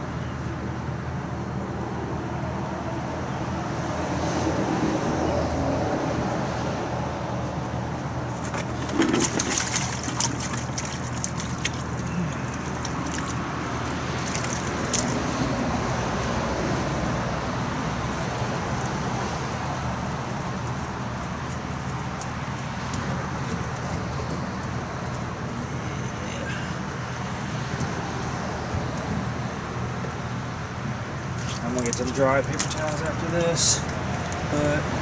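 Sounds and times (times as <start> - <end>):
steady background hum: 0.0 - 35.0
water trickling and splashing: 8.2 - 35.0.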